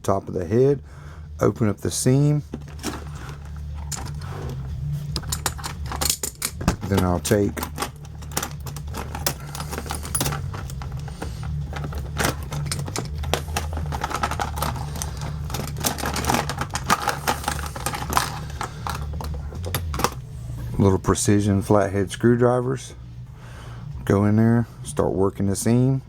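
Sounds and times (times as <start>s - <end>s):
steady low hum: 0.0s - 26.0s
metal tools clicking and rattling: 2.5s - 20.2s.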